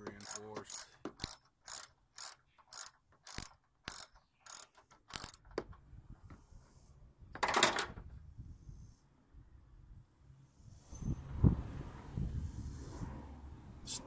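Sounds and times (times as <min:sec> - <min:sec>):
socket ratchet clicking: 0:00.0 - 0:05.6.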